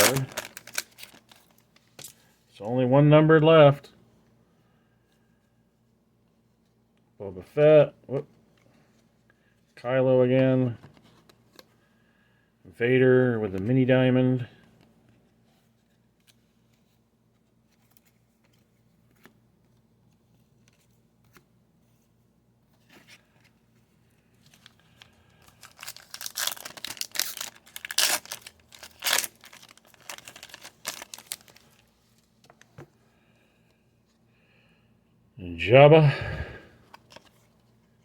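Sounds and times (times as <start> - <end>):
foil wrapper tearing and crinkling: 0.0 - 1.6, 25.3 - 31.8.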